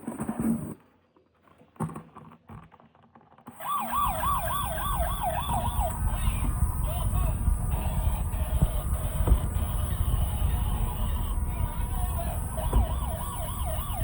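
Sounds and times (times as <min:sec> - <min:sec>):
low rumble: 0:03.6 - 0:14.0
toy siren warbling: 0:03.6 - 0:14.0.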